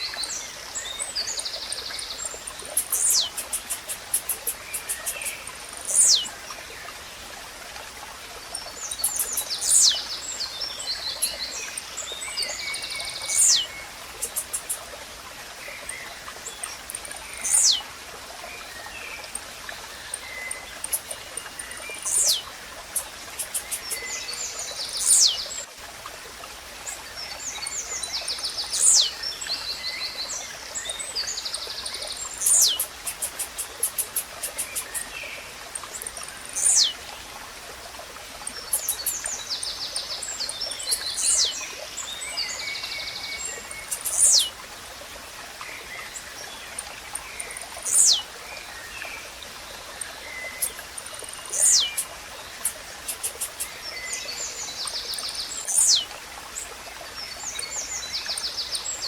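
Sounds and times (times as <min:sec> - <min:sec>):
stream trickling: 0:00.0 - 0:59.0
other birds chirping: 0:02.4 - 0:06.3, 0:08.8 - 0:10.1, 0:12.7 - 0:14.9, 0:16.9 - 0:17.8, 0:20.0 - 0:24.2, 0:24.9 - 0:25.4, 0:32.2 - 0:35.1, 0:36.0 - 0:37.0, 0:38.5 - 0:41.6, 0:43.4 - 0:44.6, 0:47.4 - 0:48.3, 0:50.0 - 0:53.8, 0:55.1 - 0:56.1.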